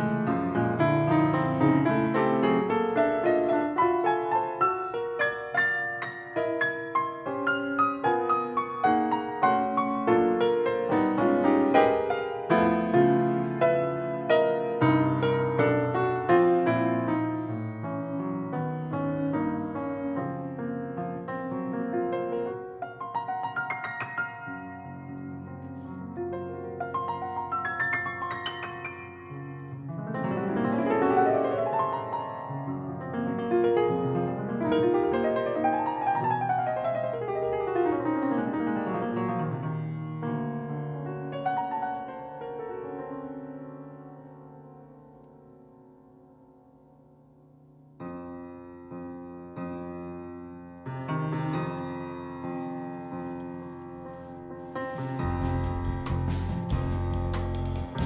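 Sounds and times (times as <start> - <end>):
solo piano: 0.0 - 58.0.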